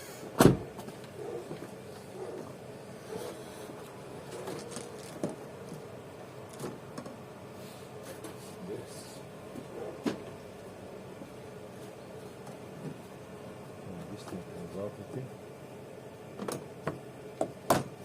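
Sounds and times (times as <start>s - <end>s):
clicks and knocks on car parts: 16.4s - 18.0s.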